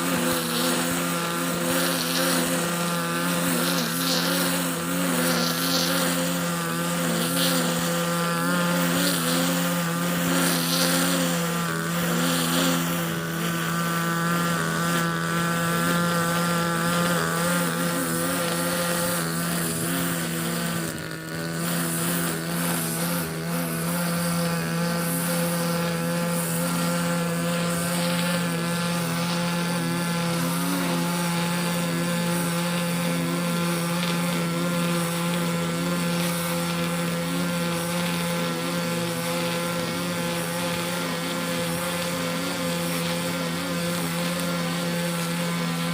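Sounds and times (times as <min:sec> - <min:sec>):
lawn mower engine running: 0:00.0 - 0:45.9.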